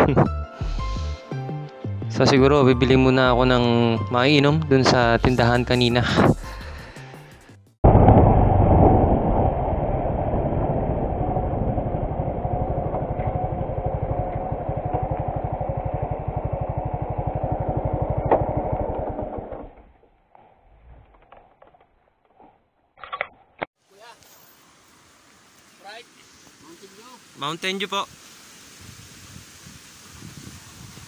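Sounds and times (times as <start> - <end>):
motorcycle engine idling: 12.0 - 19.6.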